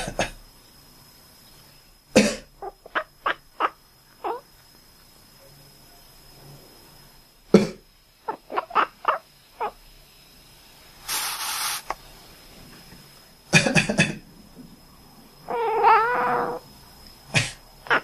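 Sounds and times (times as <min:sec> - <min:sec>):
person coughing: 0:02.2 - 0:02.5, 0:17.4 - 0:17.6
cat meowing: 0:15.5 - 0:16.6.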